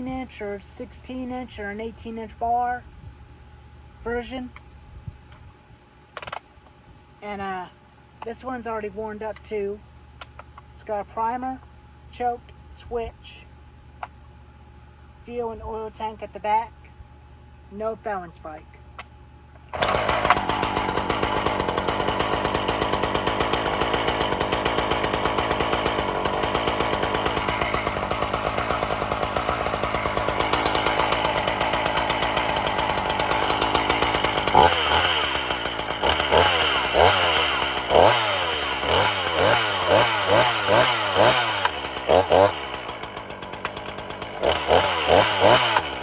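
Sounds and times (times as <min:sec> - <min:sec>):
chainsaw engine revving: 0:19.7 - 0:46.0
chainsaw running: 0:19.7 - 0:46.0.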